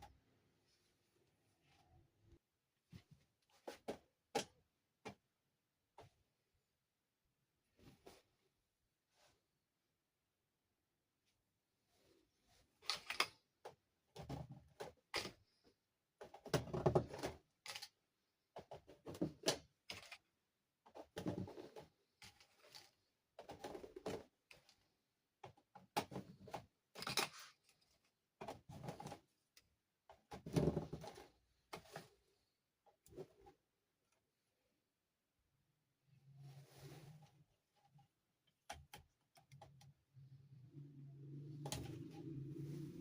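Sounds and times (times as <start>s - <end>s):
plastic parts clicking and knocking: 12.8s - 32.0s, 37.7s - 40.2s.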